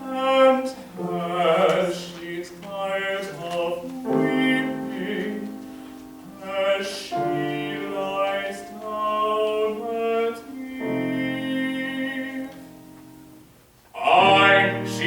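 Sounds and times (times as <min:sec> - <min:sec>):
operatic solo singing: 0:00.0 - 0:13.0, 0:14.0 - 0:15.0
piano accompaniment: 0:00.0 - 0:15.0.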